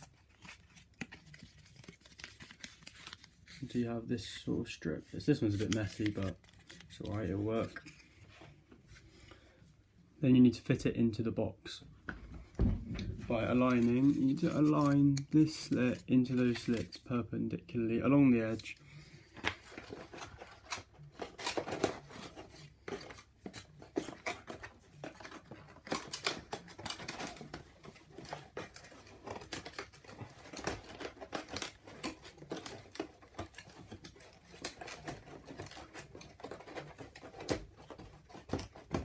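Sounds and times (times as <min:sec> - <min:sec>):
cardboard scraping and clicking: 0:19.3 - 0:39.0.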